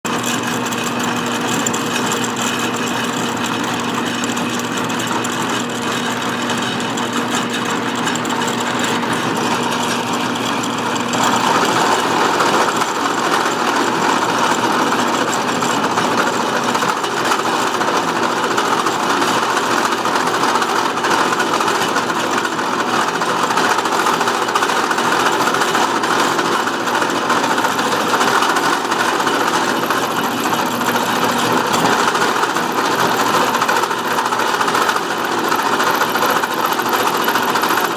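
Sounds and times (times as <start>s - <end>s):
motor hum: 0.1s - 21.5s, 22.6s - 37.9s
metal cutting noise: 0.1s - 37.9s.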